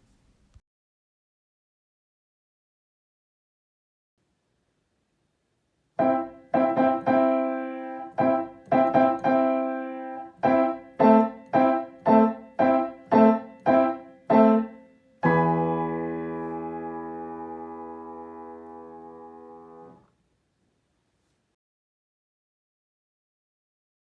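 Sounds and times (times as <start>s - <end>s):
piano playing block chords: 6.0s - 20.0s.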